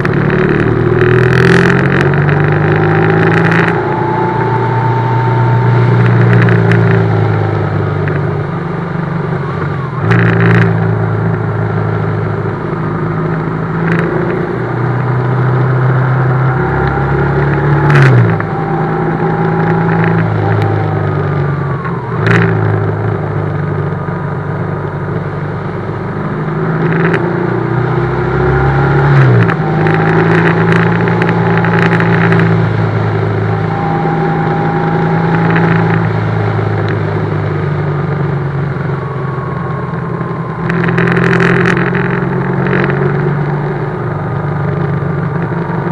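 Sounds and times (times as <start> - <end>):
motorcycle engine running: 0.0 - 45.9.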